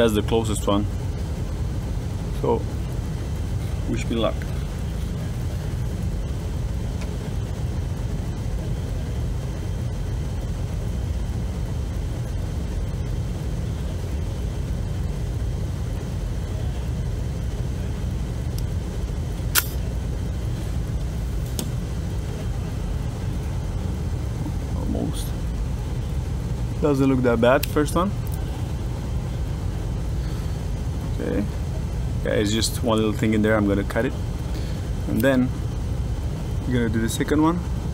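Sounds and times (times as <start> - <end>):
low background rumble: 0.0 - 37.9
sharp click: 19.6 - 19.8.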